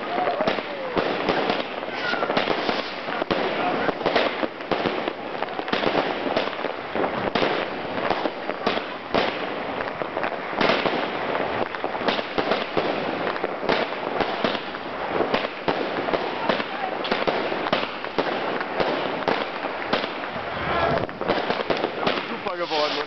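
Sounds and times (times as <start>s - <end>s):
firework bangs: 0.0s - 23.0s
fireworks crackling: 0.0s - 23.0s.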